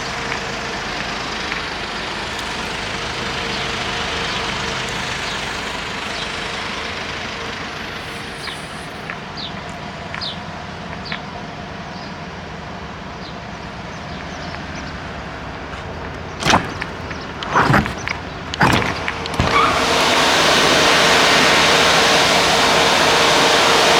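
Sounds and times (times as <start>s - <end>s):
faint short squeaks: 15.7s - 19.8s
loud sharp clunks: 15.7s - 20.6s.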